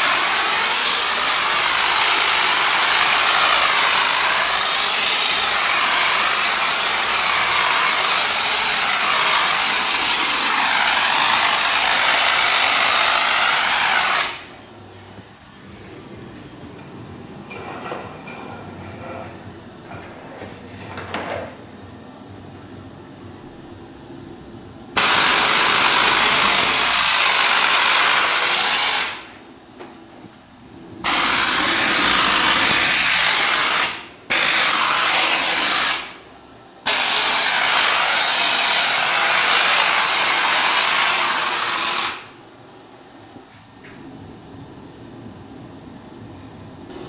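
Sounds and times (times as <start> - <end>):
foam gun spraying loud hiss: 0.0 - 14.6, 25.0 - 29.4, 31.0 - 42.4.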